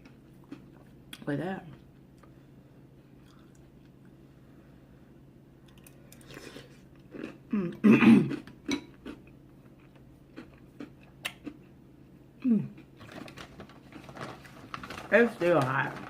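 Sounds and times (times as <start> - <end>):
chewing and mouth sounds: 3.2 - 4.0, 5.6 - 11.8
throat noise like cough: 7.5 - 8.4.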